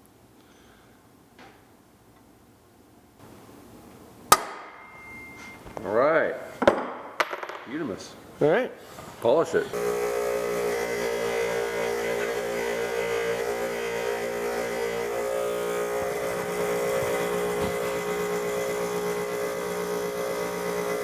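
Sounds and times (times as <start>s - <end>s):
polishing tool motor whine: 9.7s - 21.0s.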